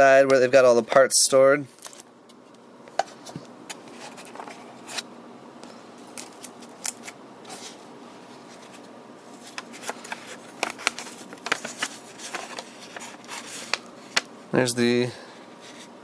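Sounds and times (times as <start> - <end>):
packaged parts clicking and rustling: 9.4 - 14.3.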